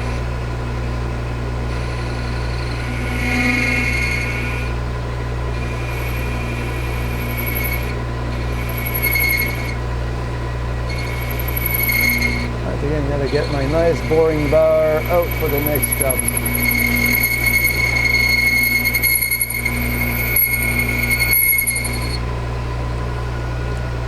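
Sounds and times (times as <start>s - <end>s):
lathe motor hum: 0.0s - 24.0s
high-pitched singing tool tone: 1.8s - 4.7s, 5.8s - 9.8s, 10.9s - 12.5s, 13.2s - 22.2s.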